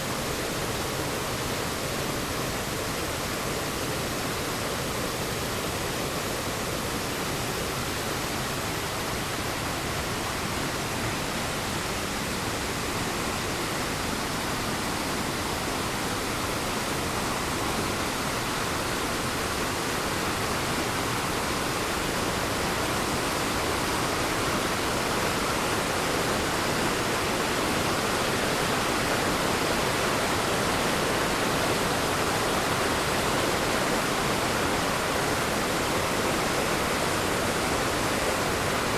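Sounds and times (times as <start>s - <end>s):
waterfall roaring: 0.0s - 38.9s.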